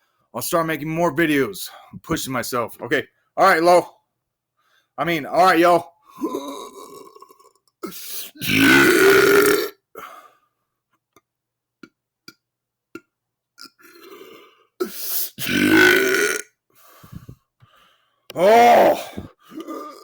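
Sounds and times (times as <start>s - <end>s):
man belching: 6.2s - 9.8s, 15.4s - 16.5s, 18.3s - 20.0s.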